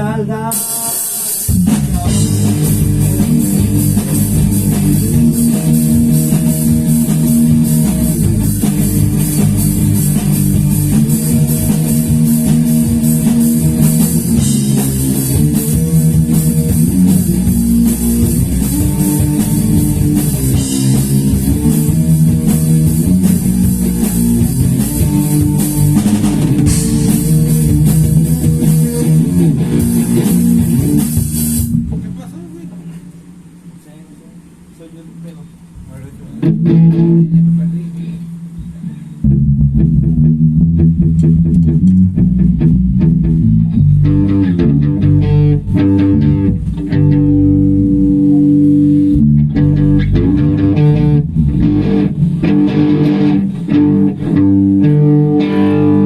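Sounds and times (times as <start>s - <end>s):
bass guitar: 0.0s - 33.8s, 35.7s - 56.0s
electric guitar chords: 0.0s - 33.8s, 35.2s - 56.0s
drum kit steady beat: 0.3s - 56.0s.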